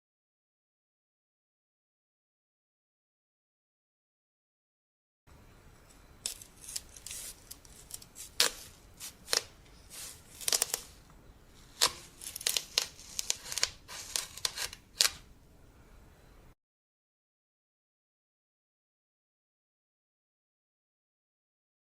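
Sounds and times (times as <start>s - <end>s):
watermelon rind cracking: 6.2s - 11.0s, 11.6s - 15.3s
knife cutting watermelon: 6.3s - 11.0s, 11.6s - 15.3s.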